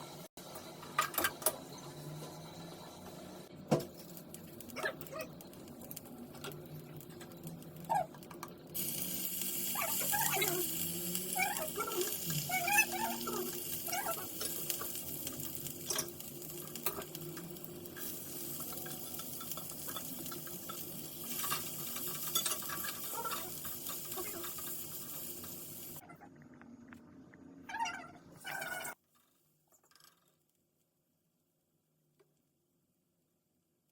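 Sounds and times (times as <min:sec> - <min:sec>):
food sizzling in hot oil: 0:03.9 - 0:26.0
kitchen utensils clicking and knocking: 0:18.5 - 0:25.6.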